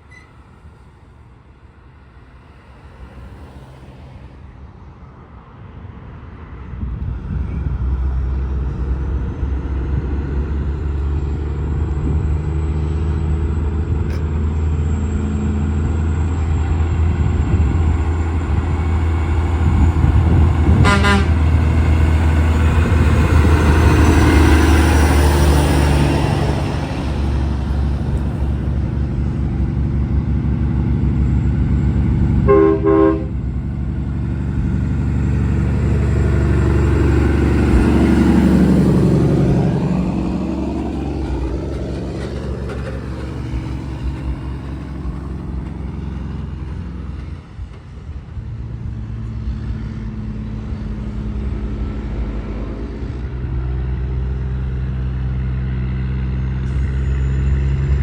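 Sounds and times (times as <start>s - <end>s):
vehicle driving past: 7.1s - 58.0s
short horn toot: 20.8s - 21.4s, 32.5s - 33.4s.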